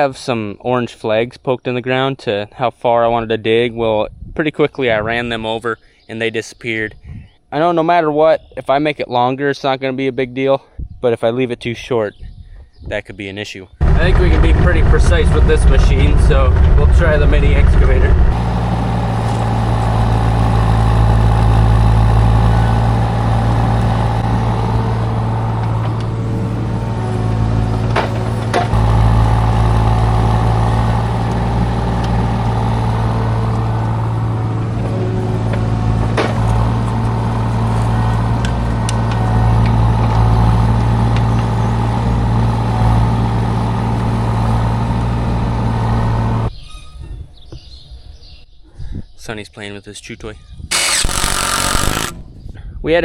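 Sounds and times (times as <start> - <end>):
excavator engine running: 13.8 - 46.5, 50.7 - 52.2
bucket and arm clanking: 27.6 - 33.8.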